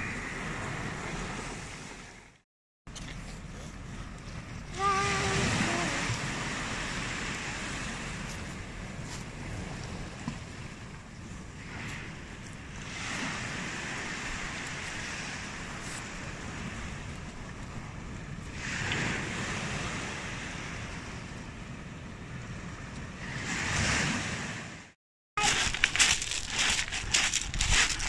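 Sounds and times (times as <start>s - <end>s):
ocean surf breaking on shore: 4.7s - 10.7s, 11.6s - 17.2s.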